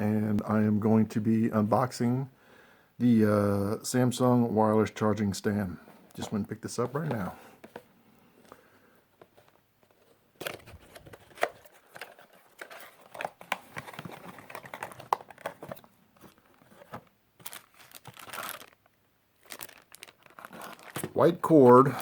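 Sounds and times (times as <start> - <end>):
packaging crinkling and tearing: 10.4 - 22.0.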